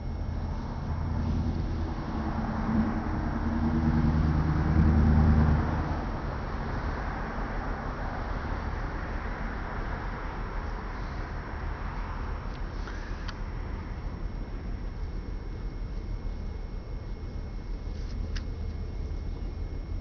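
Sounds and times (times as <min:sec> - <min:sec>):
engine drone: 0:00.0 - 0:20.0.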